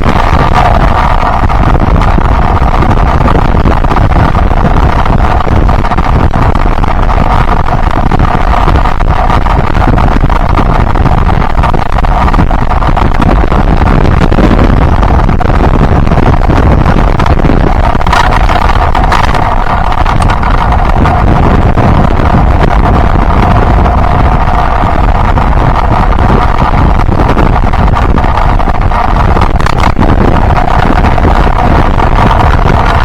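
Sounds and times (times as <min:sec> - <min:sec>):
motorcycle engine running: 0:00.0 - 0:33.0
wind rushing over microphone: 0:00.0 - 0:33.0.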